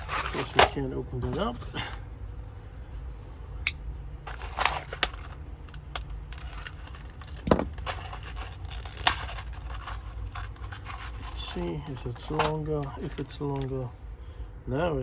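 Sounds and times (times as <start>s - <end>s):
small metal hardware rattling: 3.7s - 13.7s.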